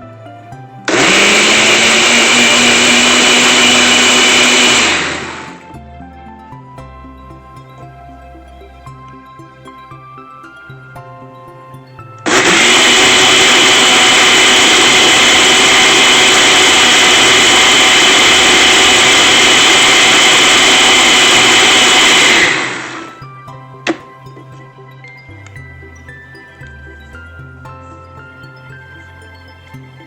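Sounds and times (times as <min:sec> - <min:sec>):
countertop blender running: 0:00.9 - 0:05.7, 0:12.3 - 0:23.3, 0:23.9 - 0:24.1.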